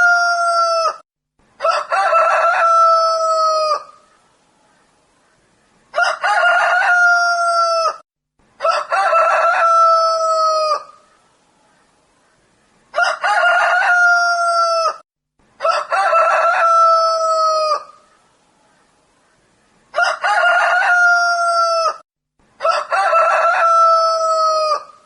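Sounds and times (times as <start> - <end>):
rooster crowing: 0.0 - 1.0, 1.6 - 4.0, 5.9 - 8.0, 8.6 - 11.0, 12.9 - 15.0, 15.6 - 18.0, 19.9 - 22.0, 22.6 - 25.0.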